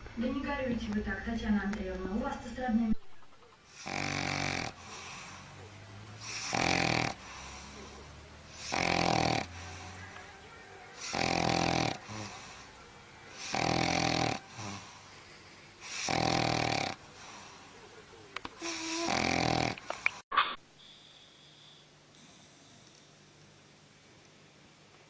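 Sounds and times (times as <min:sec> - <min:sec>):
dog snoring: 0:03.7 - 0:10.3, 0:11.0 - 0:12.7, 0:13.3 - 0:17.6, 0:18.6 - 0:19.9.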